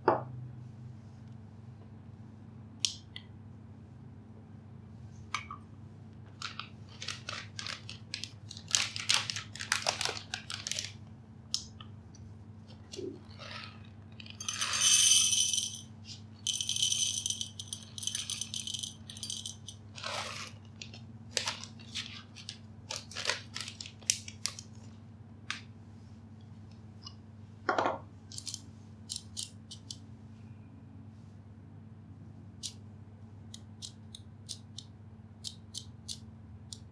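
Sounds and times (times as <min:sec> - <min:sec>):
small hard objects clicking and rattling: 0:14.3 - 0:15.8, 0:16.5 - 0:20.1.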